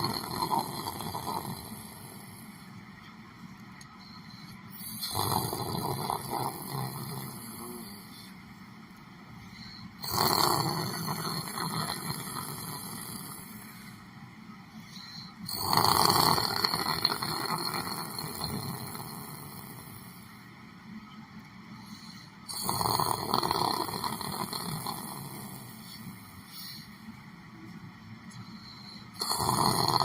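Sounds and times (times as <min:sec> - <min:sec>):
person snoring: 0:00.0 - 0:02.6, 0:04.4 - 0:08.3, 0:09.5 - 0:14.0, 0:14.9 - 0:20.2, 0:21.9 - 0:26.9, 0:28.6 - 0:30.0.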